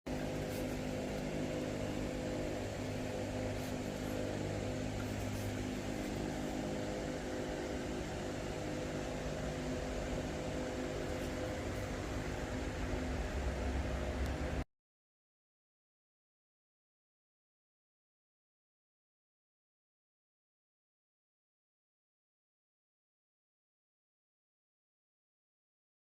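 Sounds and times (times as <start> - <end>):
machine hum: 0.1 - 14.6.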